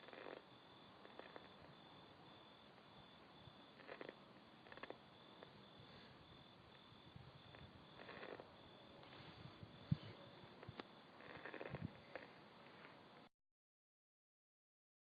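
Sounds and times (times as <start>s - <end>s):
faint steady hiss: 0.0s - 13.3s
soft rustles: 9.0s - 13.1s.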